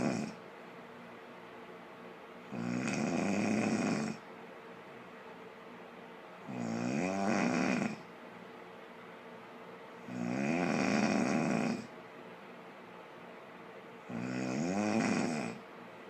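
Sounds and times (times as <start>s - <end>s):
woman snoring loudly: 0.0s - 0.4s, 2.5s - 4.2s, 6.5s - 8.0s, 10.1s - 11.9s, 14.1s - 15.6s.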